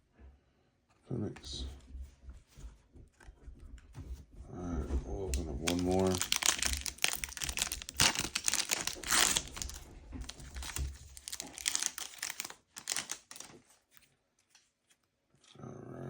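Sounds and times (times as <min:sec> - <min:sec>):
plastic foil wrapper crinkling: 0:05.3 - 0:15.0.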